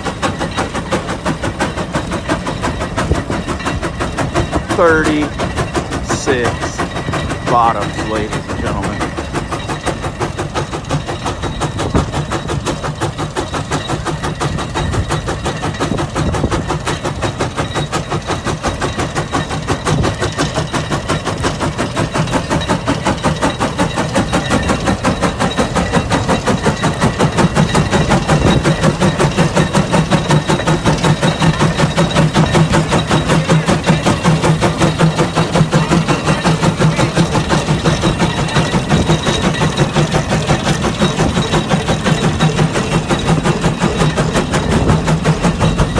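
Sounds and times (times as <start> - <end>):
steam engine exhaust chuffing: 0.0 - 45.9.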